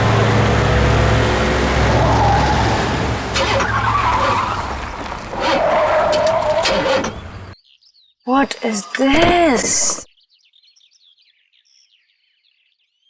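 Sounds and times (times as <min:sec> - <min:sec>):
car engine running: 0:00.0 - 0:07.6
tyres squealing: 0:00.0 - 0:07.6, 0:08.3 - 0:10.1.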